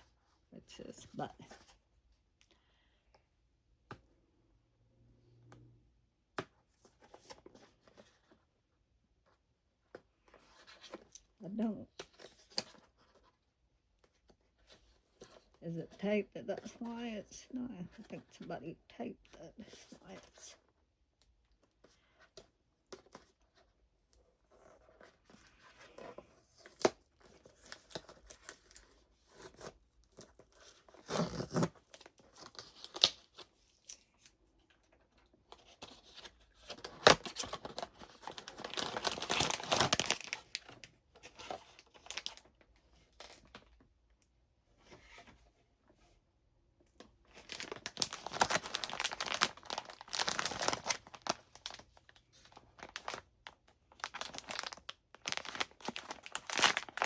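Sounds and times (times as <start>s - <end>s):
cardboard box tearing: 30.8s - 32.6s, 47.5s - 51.1s
packaging crinkling: 35.9s - 42.5s, 47.3s - 57.0s.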